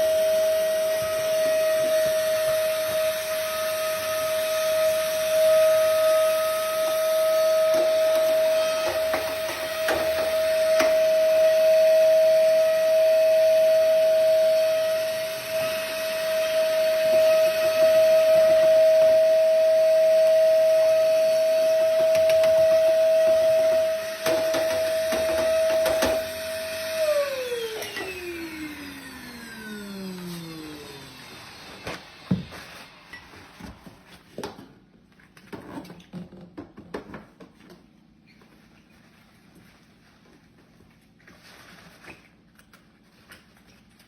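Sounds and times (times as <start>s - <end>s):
vacuum cleaner motor whining: 0.0s - 34.0s.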